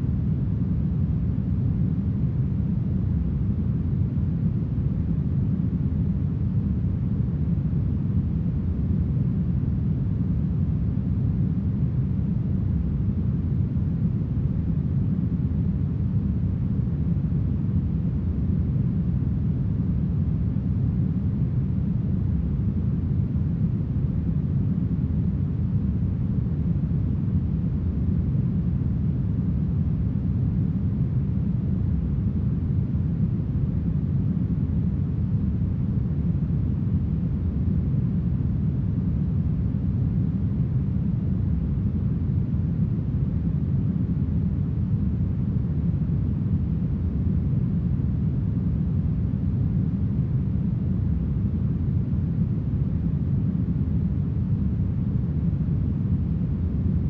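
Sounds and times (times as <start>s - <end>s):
smoothed brown noise: 0.0s - 57.0s.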